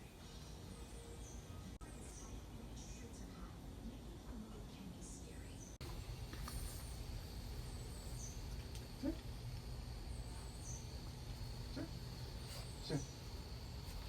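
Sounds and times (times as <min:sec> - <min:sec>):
steady low rumble: 0:05.8 - 0:14.0.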